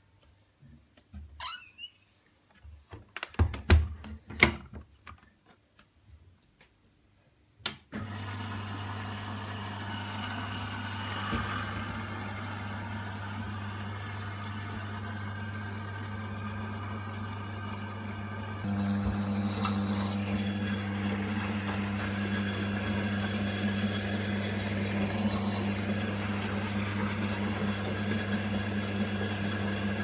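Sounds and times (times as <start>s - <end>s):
washing machine low hum: 8.0s - 30.0s.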